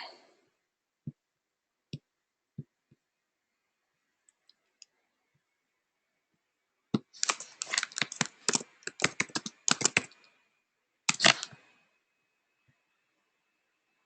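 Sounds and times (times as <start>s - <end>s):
computer keyboard typing: 7.0s - 10.3s.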